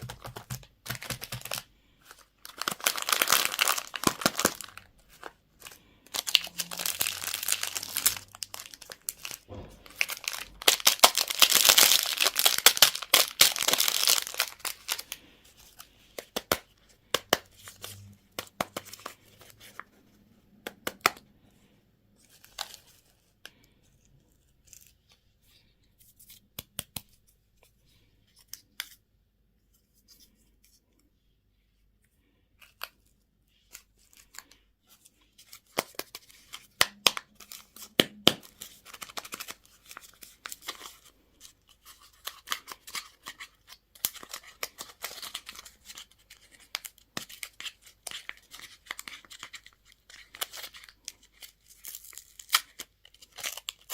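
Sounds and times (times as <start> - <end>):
packaging clicks and taps: 0.0 - 1.6
plastic wrapper crinkling: 0.0 - 19.9, 35.4 - 53.9.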